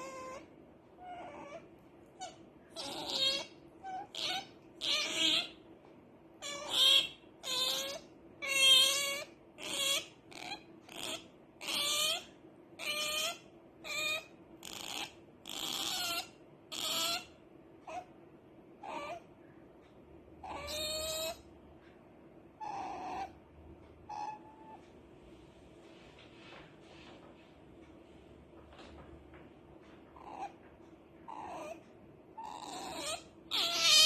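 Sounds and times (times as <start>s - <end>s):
otter calling: 2.2s - 5.6s, 6.4s - 18.1s, 20.4s - 21.4s, 32.4s - 34.0s.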